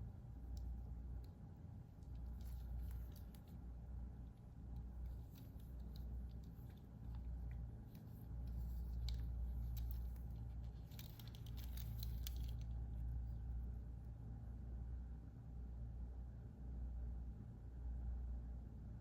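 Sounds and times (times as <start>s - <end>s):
low steady hum: 0.0s - 19.0s
light clicks and rustles: 0.4s - 13.5s.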